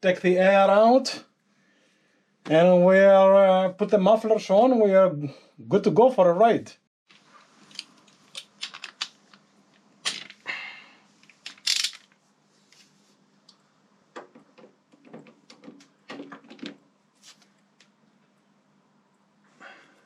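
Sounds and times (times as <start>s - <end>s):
hand tools and metal parts clinking: 11.3s - 12.2s.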